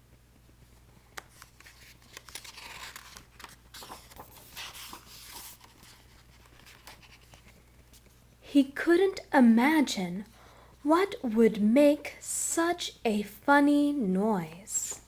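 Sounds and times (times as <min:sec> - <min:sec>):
paper rustling and crinkling: 0:01.0 - 0:08.2.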